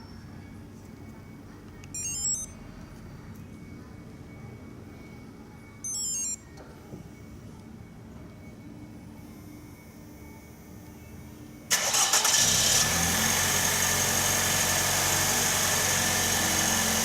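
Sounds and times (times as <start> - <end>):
electronic beep melodies: 1.8 - 2.8, 4.7 - 6.6.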